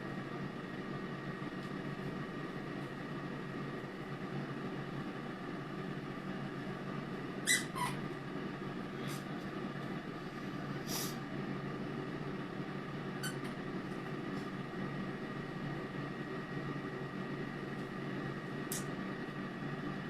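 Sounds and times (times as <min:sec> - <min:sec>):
air fryer fan hum: 0:00.0 - 0:20.0
high squeak: 0:07.5 - 0:08.0.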